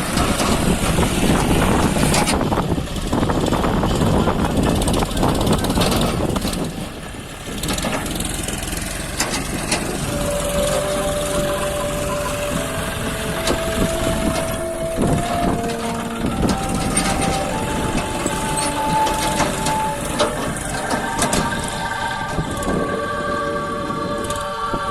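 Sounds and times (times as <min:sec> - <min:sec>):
tractor diesel engine under load: 0:00.0 - 0:24.9
wind buffeting microphone: 0:00.0 - 0:24.9
held tones rising in pitch: 0:08.8 - 0:24.9.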